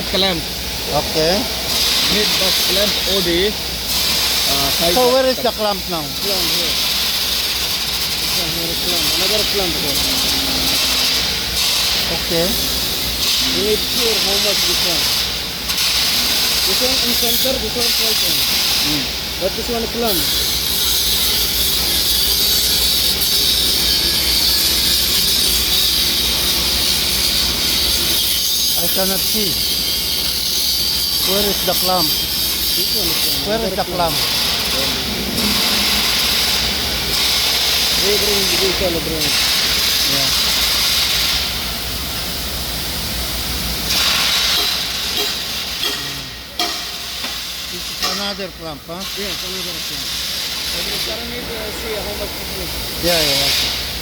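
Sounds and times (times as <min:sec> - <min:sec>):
loud hiss: 0:00.0 - 0:54.0.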